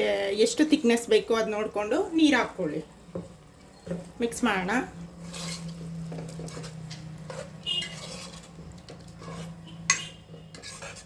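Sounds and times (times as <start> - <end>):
spoon stirring in a pan: 5.0 - 11.0
metal clinks and scrapes on pan: 5.3 - 11.0.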